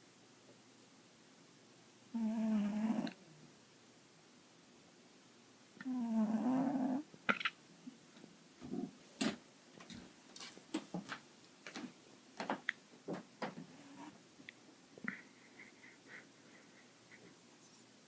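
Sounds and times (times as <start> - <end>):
cat snoring: 2.2 - 3.2, 5.8 - 7.1.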